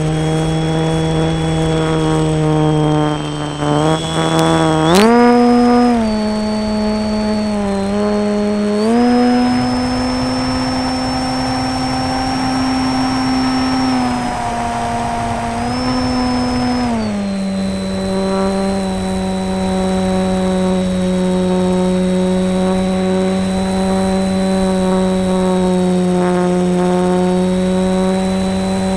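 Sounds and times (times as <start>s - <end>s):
electric motor and propeller whine: 0.0s - 28.9s.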